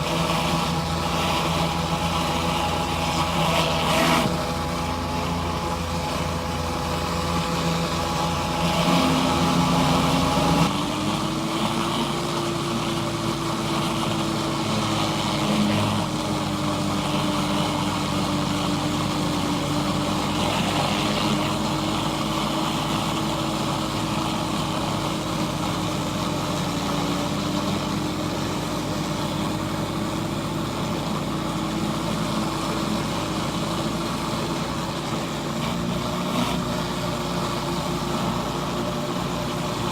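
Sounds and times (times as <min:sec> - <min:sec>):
pressure washer engine running: 0:00.0 - 0:39.9
water spraying onto concrete: 0:00.0 - 0:39.9.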